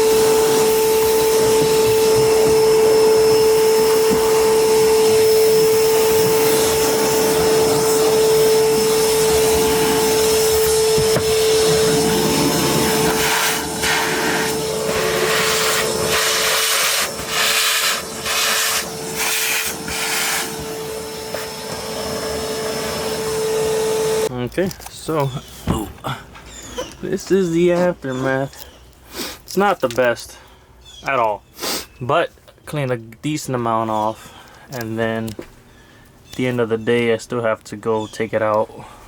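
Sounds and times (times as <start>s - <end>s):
suction hiss: 0.0s - 24.3s
vacuum cleaner motor whine: 0.0s - 24.3s.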